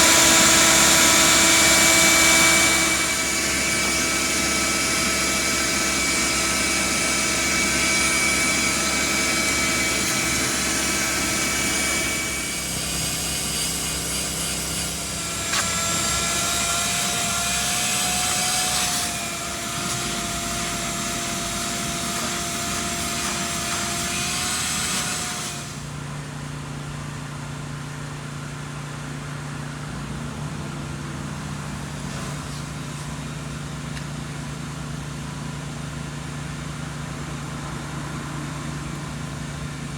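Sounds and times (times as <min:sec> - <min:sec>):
motor machine whining: 0:00.0 - 0:26.1.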